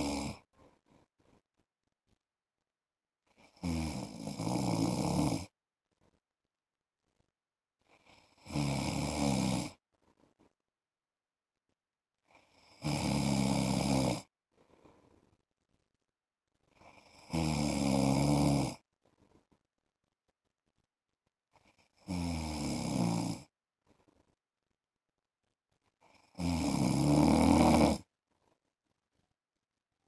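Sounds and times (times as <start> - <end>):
man snoring: 0.0 - 0.4, 3.5 - 5.5, 8.2 - 9.8, 12.5 - 14.3, 17.0 - 18.8, 22.1 - 23.5, 26.3 - 28.1.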